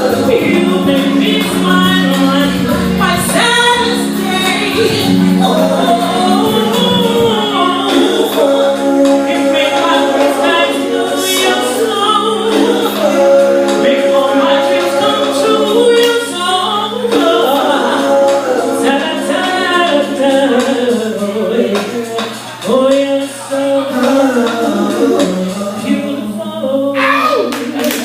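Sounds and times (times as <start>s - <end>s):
backing music: 0.0s - 28.0s
person singing: 0.0s - 28.0s.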